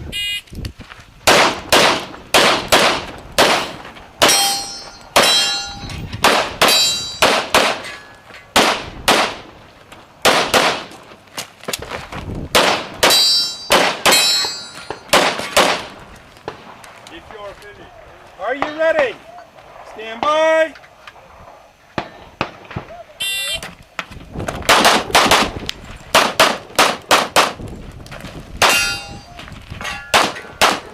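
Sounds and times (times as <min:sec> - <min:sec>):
pistol shots: 0:01.2 - 0:05.6, 0:06.2 - 0:09.5, 0:10.2 - 0:11.0, 0:12.5 - 0:16.8, 0:24.7 - 0:27.6, 0:30.0 - 0:30.9
metallic ring of steel targets: 0:03.6 - 0:08.5, 0:13.0 - 0:15.1, 0:28.6 - 0:30.6.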